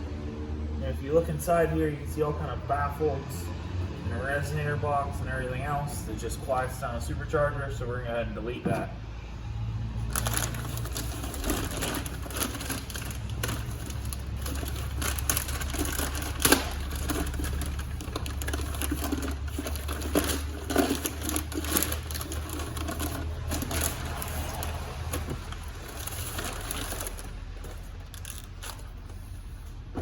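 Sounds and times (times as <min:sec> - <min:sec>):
hands handling plastic parts: 0:10.0 - 0:30.0.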